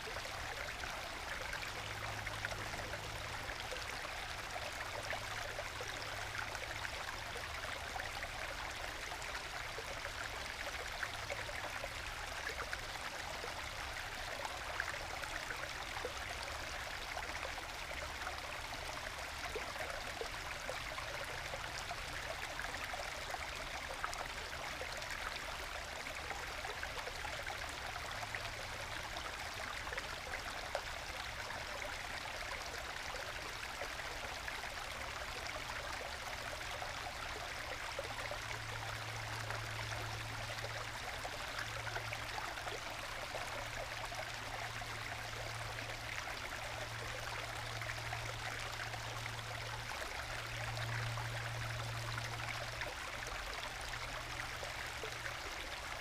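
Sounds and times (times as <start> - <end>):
stream trickling and gurgling: 0.0 - 56.0.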